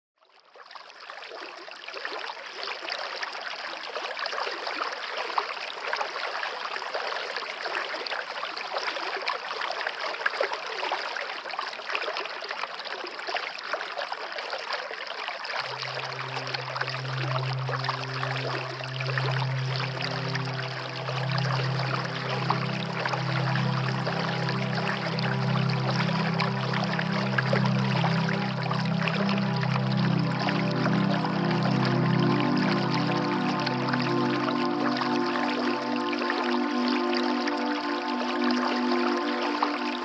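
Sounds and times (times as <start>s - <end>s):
stream water running: 0.3s - 40.0s
low musical drone: 15.6s - 40.0s.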